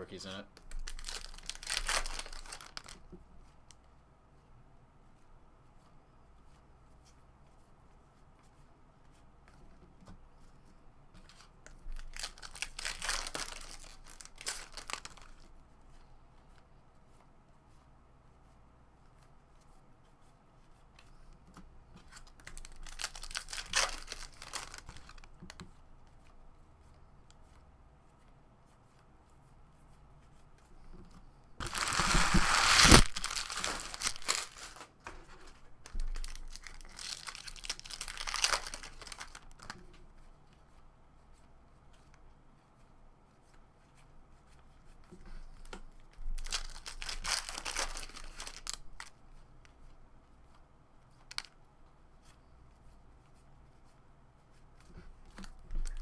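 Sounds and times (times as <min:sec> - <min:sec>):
foil wrappers tearing and crinkling: 0:00.7 - 0:03.0, 0:12.0 - 0:15.4, 0:22.4 - 0:25.3, 0:31.6 - 0:34.9, 0:35.8 - 0:39.7, 0:46.4 - 0:49.1.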